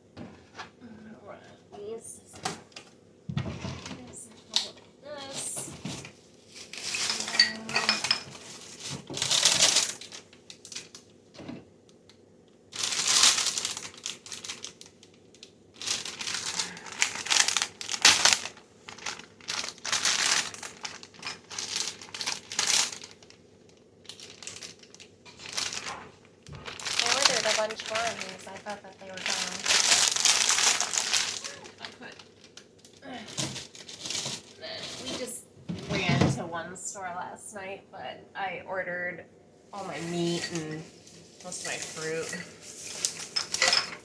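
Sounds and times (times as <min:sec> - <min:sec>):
plastic wrapping crinkling: 0:03.9 - 0:11.2, 0:12.7 - 0:35.4, 0:39.8 - 0:44.0
jars and bottles clinking: 0:06.8 - 0:08.4, 0:43.2 - 0:44.0.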